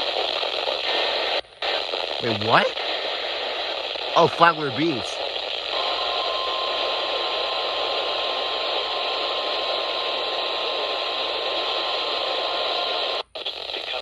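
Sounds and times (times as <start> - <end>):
heavy static hiss: 0.0 - 14.0
steady high alarm tone: 5.7 - 10.2.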